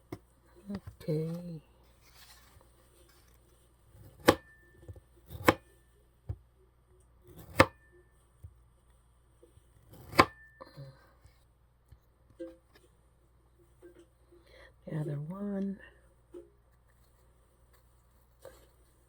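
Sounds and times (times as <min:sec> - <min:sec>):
knife chopping on a board: 0:04.0 - 0:05.7, 0:07.3 - 0:07.9, 0:09.9 - 0:10.5.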